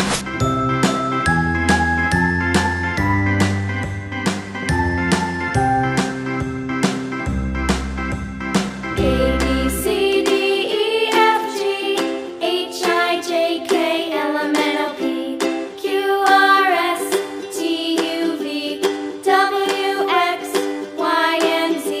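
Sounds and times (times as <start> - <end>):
plucked string accompaniment: 0.2 - 22.0
bending melody line: 0.4 - 11.4.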